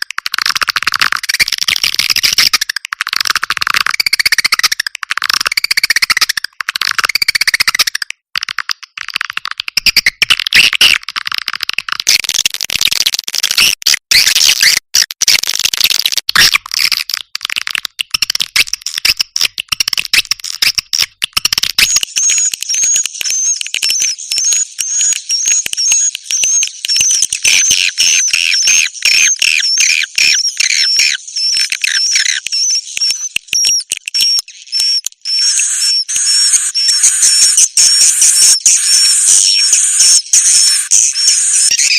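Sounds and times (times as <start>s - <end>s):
songbird chattering and trills: 22.2s - 41.9s.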